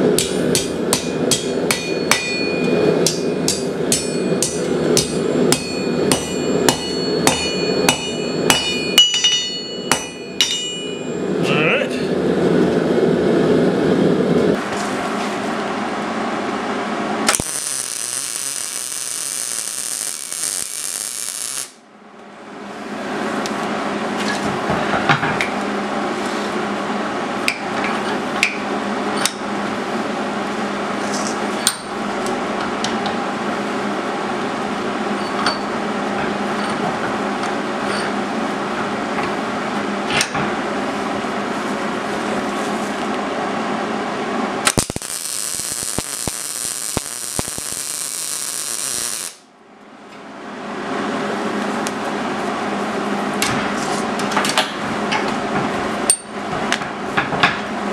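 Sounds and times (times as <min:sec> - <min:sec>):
forge roaring: 0:09.9 - 0:21.8
harsh hiss with crackling: 0:17.4 - 0:21.8, 0:44.8 - 0:49.4.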